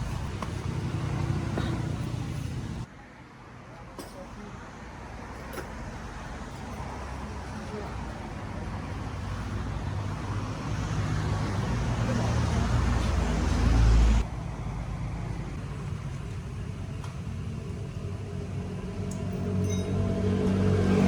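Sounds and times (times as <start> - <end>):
engine humming: 0.0 - 2.9.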